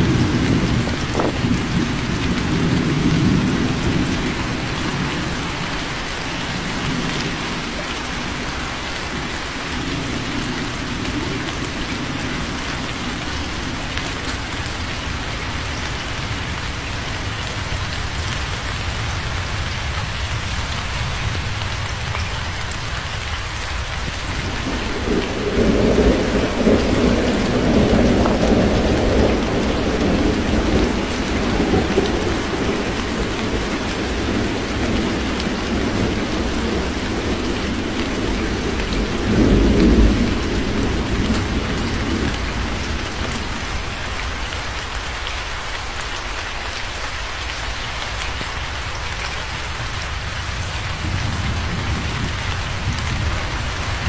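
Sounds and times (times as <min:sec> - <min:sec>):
rolling thunder: 0:00.0 - 0:07.6, 0:23.7 - 0:44.4, 0:49.8 - 0:54.0
heavy rain: 0:00.0 - 0:54.0.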